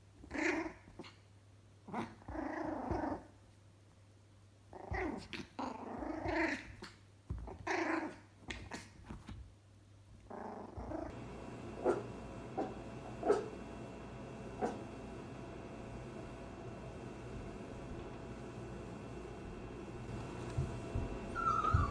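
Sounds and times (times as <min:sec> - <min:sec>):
puppy growling: 0:00.2 - 0:01.2, 0:01.9 - 0:03.3, 0:04.7 - 0:09.0, 0:10.2 - 0:11.2, 0:14.6 - 0:14.8, 0:21.0 - 0:21.9.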